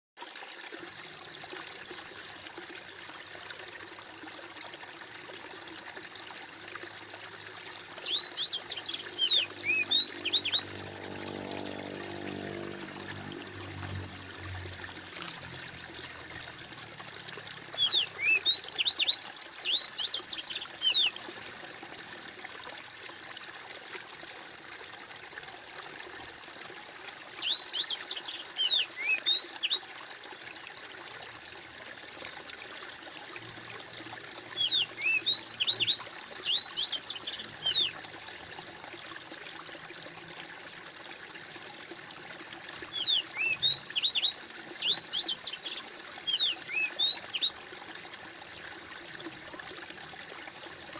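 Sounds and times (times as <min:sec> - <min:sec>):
water trickling and gurgling: 0:00.2 - 0:50.9
songbird chirping: 0:07.7 - 0:11.5.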